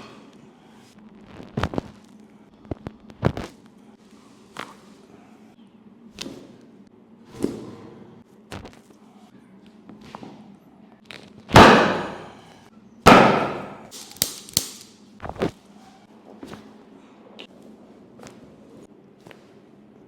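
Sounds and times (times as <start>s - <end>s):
sharp cracks and thuds: 11.5s - 12.4s, 13.1s - 14.9s.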